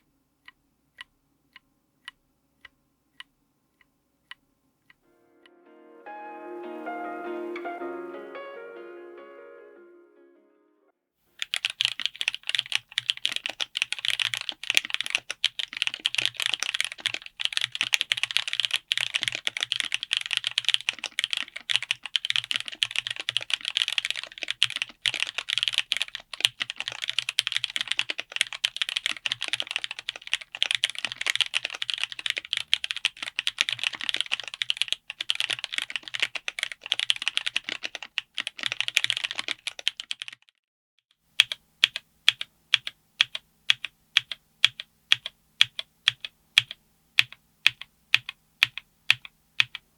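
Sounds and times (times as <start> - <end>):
fast mechanical keyboard typing: 11.4 - 40.5, 41.4 - 49.9.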